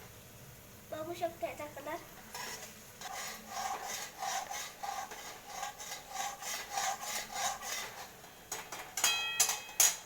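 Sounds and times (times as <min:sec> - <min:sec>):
onion sizzling in oil: 0:00.0 - 0:08.5
spatula scraping frying pan: 0:02.1 - 0:09.8.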